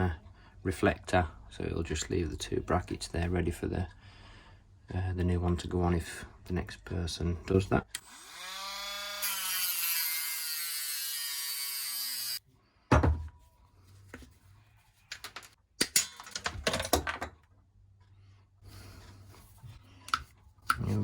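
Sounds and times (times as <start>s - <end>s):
small power tool motor whirring: 8.0s - 12.4s
clicks and knocks of parts handled: 15.1s - 17.5s.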